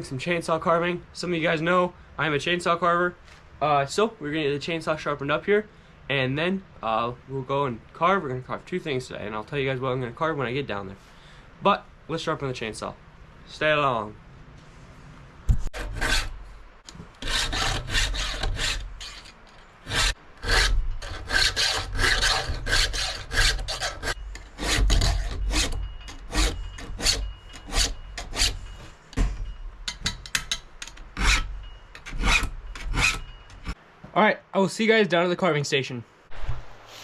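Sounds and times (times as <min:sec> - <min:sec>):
file rasping on chainsaw chain: 0:15.8 - 0:28.7, 0:30.9 - 0:33.8.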